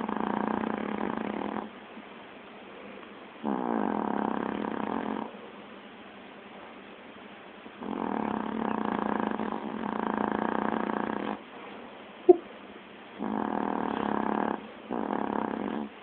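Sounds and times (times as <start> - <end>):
pet snoring: 0.0 - 1.8, 3.4 - 5.4, 7.8 - 11.5, 13.2 - 16.0.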